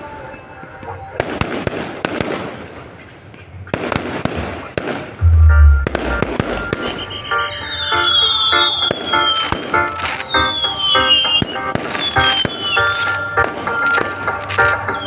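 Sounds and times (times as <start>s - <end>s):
fireworks bangs and crackles: 1.2s - 15.0s
heavy low boom: 5.2s - 7.4s
background music: 5.2s - 15.0s.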